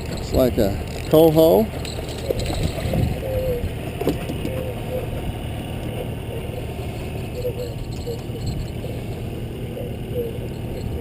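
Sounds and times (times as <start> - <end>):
boat motor humming: 0.0 - 11.0
wind: 0.0 - 11.0.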